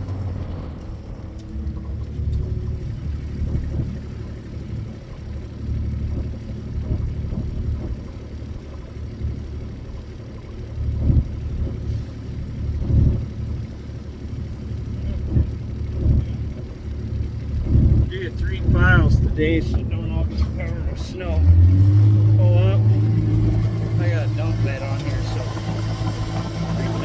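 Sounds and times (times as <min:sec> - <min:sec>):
vehicle engine running: 0:00.0 - 0:27.0.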